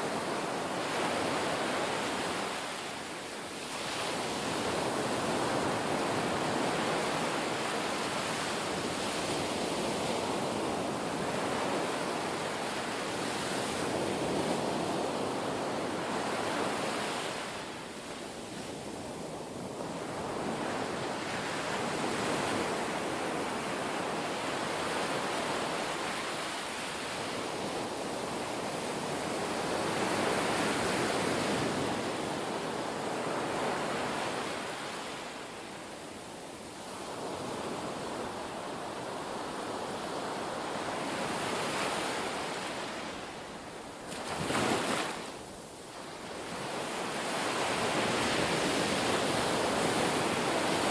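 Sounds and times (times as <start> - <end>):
waves breaking and washing in: 0.0 - 50.9.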